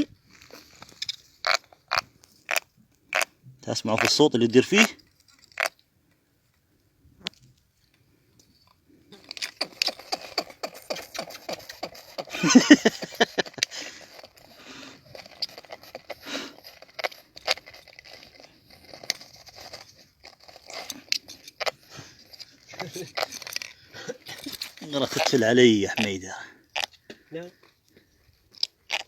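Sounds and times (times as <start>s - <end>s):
fish clicking and rasping: 0.6s - 3.3s, 4.8s - 5.8s, 9.1s - 27.0s, 27.7s - 29.0s.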